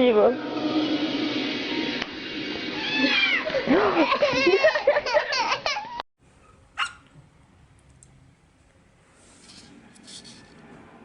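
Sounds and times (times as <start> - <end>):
cat meowing: 2.8 - 3.5.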